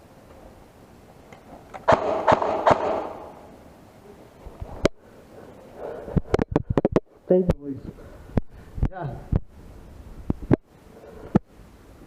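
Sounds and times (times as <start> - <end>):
airsoft gun shots: 1.8 - 3.5.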